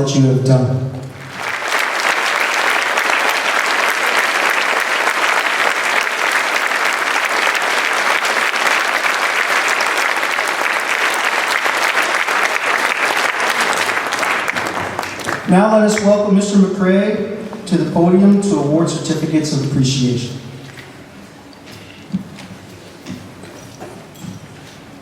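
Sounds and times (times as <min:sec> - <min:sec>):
large audience applauding: 0:01.1 - 0:15.5.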